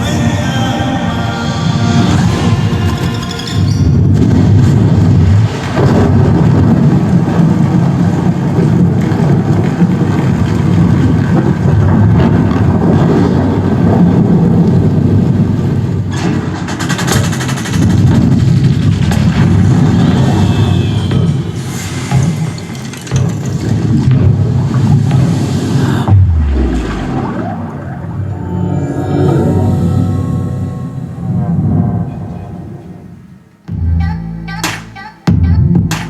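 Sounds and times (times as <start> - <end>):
film soundtrack music: 0.0 - 5.6, 21.0 - 36.0
deep rumbling effects: 0.0 - 36.0
sharp crash: 20.9 - 32.6.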